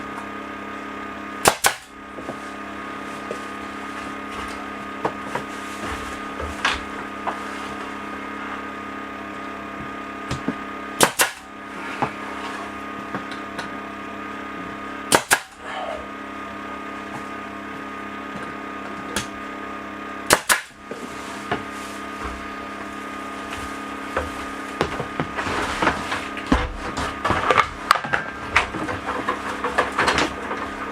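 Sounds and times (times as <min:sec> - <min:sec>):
air compressor humming: 0:00.0 - 0:30.9
pneumatic stapler cracks: 0:01.4 - 0:01.9, 0:11.0 - 0:11.5, 0:15.1 - 0:15.6, 0:20.3 - 0:20.8.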